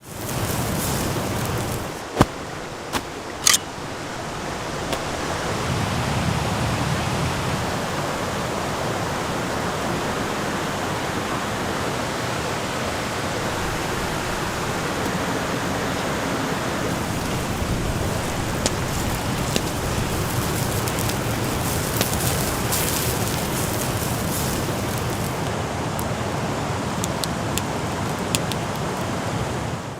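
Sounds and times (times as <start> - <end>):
fire crackling pops: 0.0 - 3.6, 16.8 - 26.2, 26.9 - 29.1
campfire hissing: 0.0 - 6.1, 7.6 - 29.9.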